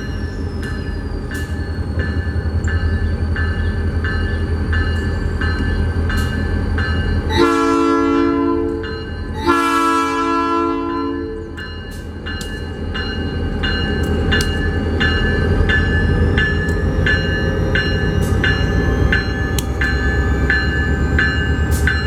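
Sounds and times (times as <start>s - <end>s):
diesel locomotive rumbling: 0.0s - 22.0s
locomotive bell ringing: 0.0s - 22.0s
multi-note air horn blasts: 7.3s - 8.8s, 9.4s - 11.5s.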